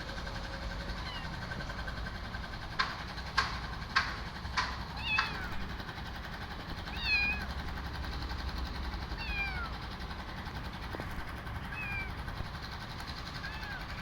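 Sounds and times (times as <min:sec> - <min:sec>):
steady low hum: 0:00.0 - 0:14.0
kitten meowing: 0:01.0 - 0:01.4, 0:05.0 - 0:05.6, 0:06.9 - 0:07.5, 0:09.2 - 0:09.7, 0:11.7 - 0:12.2, 0:13.4 - 0:14.0.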